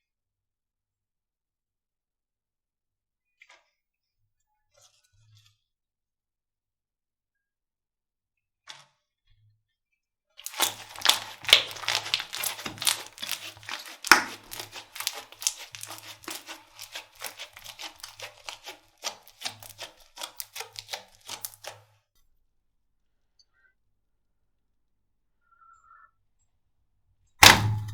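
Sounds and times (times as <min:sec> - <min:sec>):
slime crackling and popping: 0:10.4 - 0:21.8, 0:27.4 - 0:27.9.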